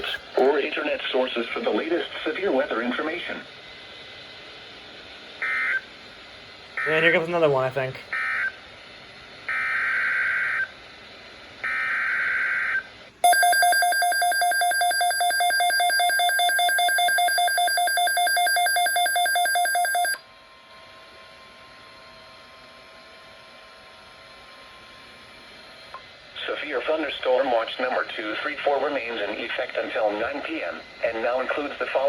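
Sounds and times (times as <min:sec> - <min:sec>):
screechy data-tone bursts: 0:13.3 - 0:20.2.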